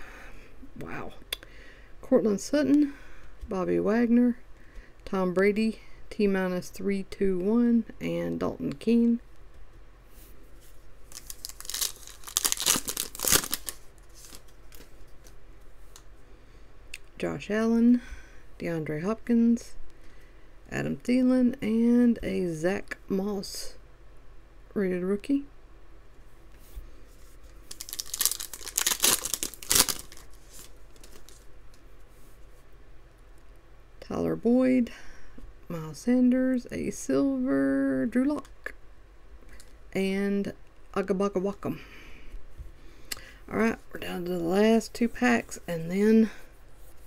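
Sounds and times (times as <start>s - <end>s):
handling of cards: 10.5s - 16.1s, 26.6s - 32.5s
foil pack tearing and crinkling: 11.1s - 14.9s, 27.7s - 31.4s.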